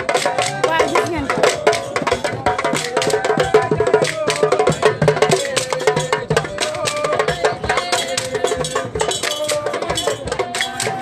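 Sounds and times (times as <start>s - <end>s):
hand drums playing fast rhythm: 0.0s - 11.0s.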